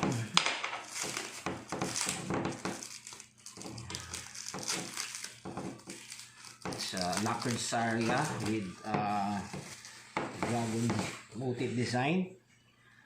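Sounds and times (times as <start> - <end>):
rustling of sword wrapping: 2.8 - 10.0.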